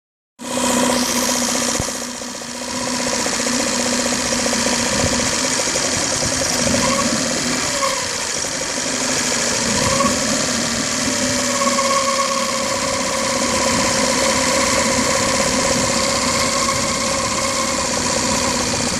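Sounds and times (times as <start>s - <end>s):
outboard motor running: 0.4s - 18.9s
wavering whistle: 11.4s - 13.8s, 16.1s - 18.0s.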